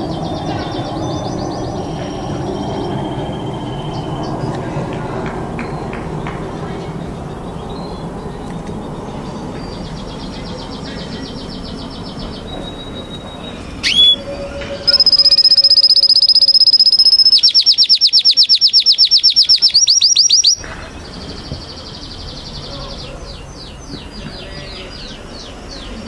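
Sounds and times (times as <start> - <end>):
canary singing trills: 9.2 - 20.6.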